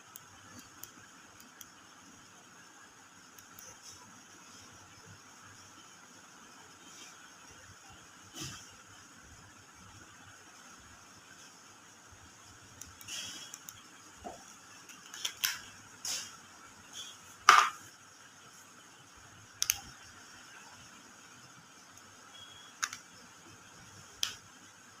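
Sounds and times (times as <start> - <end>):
sharp clicks: 19.6 - 20.0, 22.8 - 23.1.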